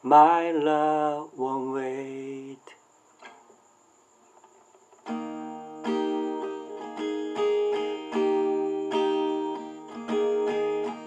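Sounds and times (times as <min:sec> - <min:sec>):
acoustic guitar strummed in chords: 0:04.9 - 0:11.0.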